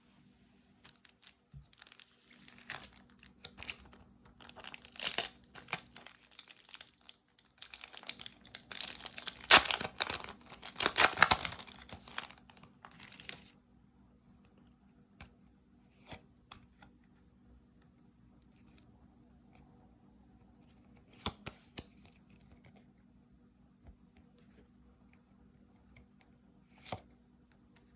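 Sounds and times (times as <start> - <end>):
foil pack tearing and crinkling: 0.9 - 13.3.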